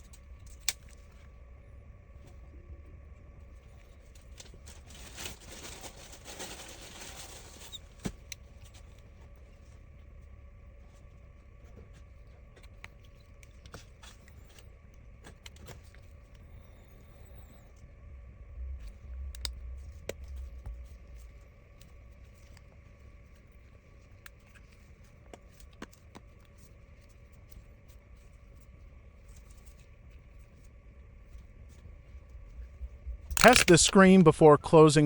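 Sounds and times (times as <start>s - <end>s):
low hum: 16.0s - 23.6s, 29.4s - 35.0s.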